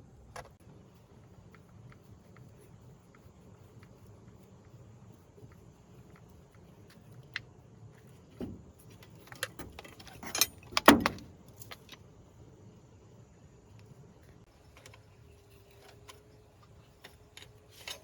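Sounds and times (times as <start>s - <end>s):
metal tools clinking and clanking: 8.4s - 11.9s.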